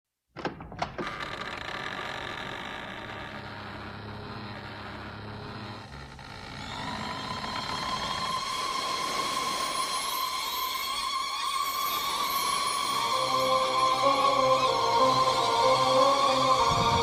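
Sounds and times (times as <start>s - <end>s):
electronic drone: 5.5s - 17.0s.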